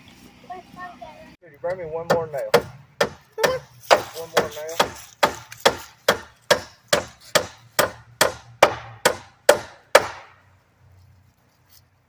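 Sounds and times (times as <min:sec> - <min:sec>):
hammer driving nail into wood: 0:03.9 - 0:10.3.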